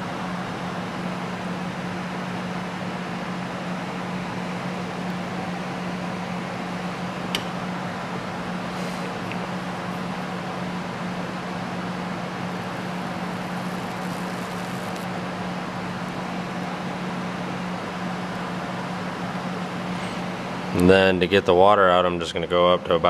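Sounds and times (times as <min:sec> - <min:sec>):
distorted low hum from phone speaker: 0:12.7 - 0:15.1.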